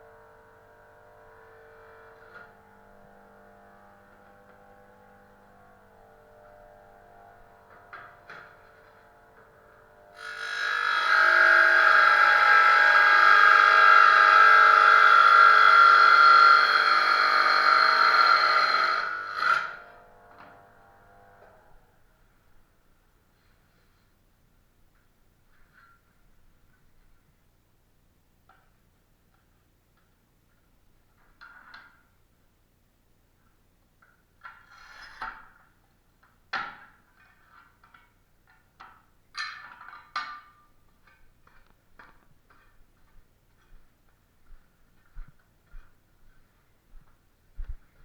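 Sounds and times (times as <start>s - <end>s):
power tool motor running: 10.2s - 19.9s.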